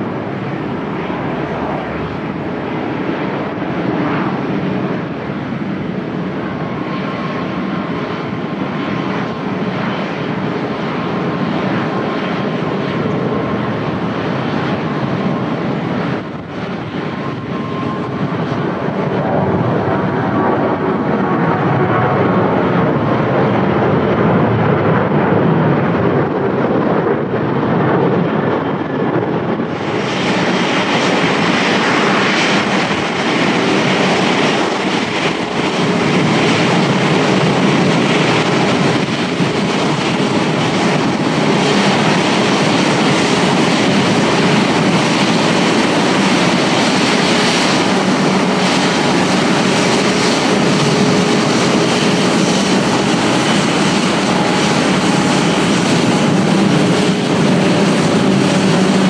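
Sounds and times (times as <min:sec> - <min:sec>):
jet airliner landing: 0:00.0 - 0:59.0
jet airliner taking off: 0:00.0 - 0:59.0.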